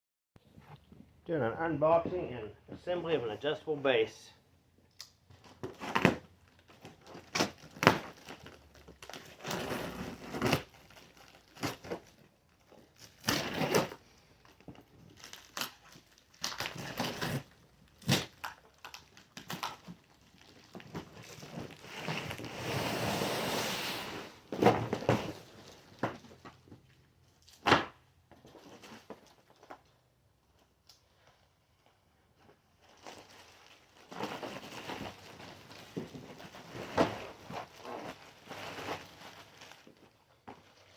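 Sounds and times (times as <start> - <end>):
packaging crinkling: 5.5 - 22.9, 32.8 - 40.9.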